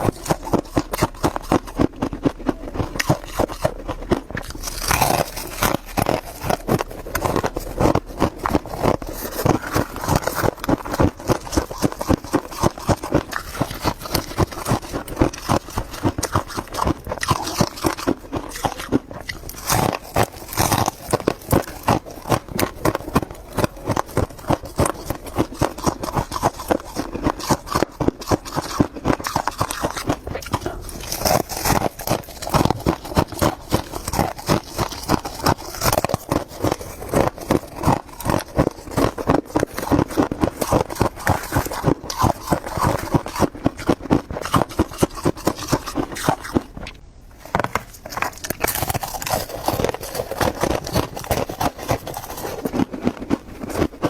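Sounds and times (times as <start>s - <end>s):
chewing frost crunching: 0.0s - 54.0s.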